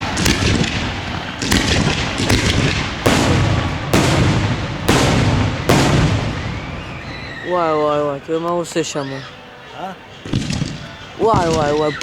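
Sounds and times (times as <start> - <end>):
fireworks bangs: 0.0 - 8.5, 10.2 - 12.0
fireworks crackling: 0.0 - 8.7.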